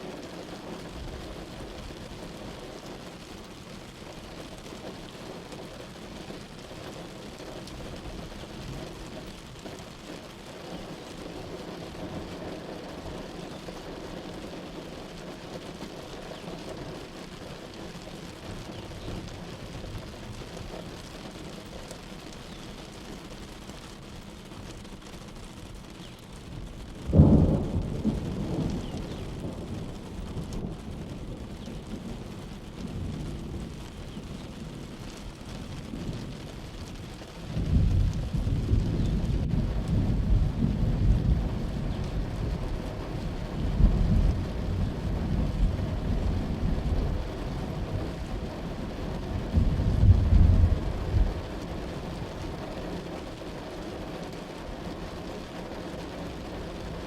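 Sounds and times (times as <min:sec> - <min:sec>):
heavy rain: 0:00.0 - 0:57.0
loud thunderclap: 0:27.0 - 0:32.2, 0:37.5 - 0:42.6, 0:49.4 - 0:51.5
rolling thunder: 0:27.0 - 0:35.0, 0:35.8 - 0:52.3.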